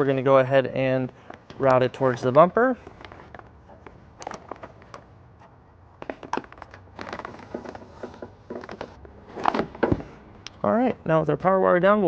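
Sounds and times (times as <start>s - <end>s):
crinkling plastic rustles: 6.0s - 9.8s.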